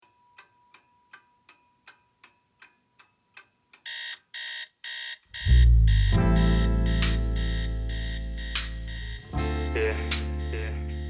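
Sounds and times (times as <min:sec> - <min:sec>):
clock ticking: 0:00.0 - 0:11.0
digital alarm clock beeping: 0:03.5 - 0:11.0
band with deep bass and guitar: 0:05.5 - 0:11.0.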